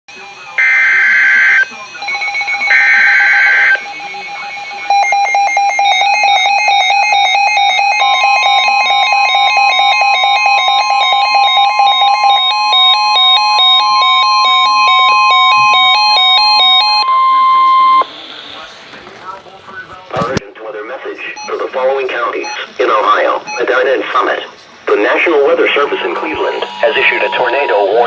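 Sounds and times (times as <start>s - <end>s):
rapid electronic beeping: 0.1s - 18.8s, 20.6s - 28.0s
steady alert tone: 2.0s - 10.5s, 25.2s - 28.0s
two-tone digital warbling: 25.2s - 28.0s.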